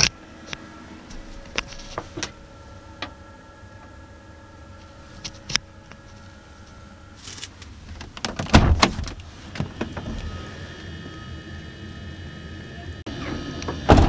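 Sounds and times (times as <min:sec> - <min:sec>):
door mechanism rattling: 0:07.4 - 0:10.3.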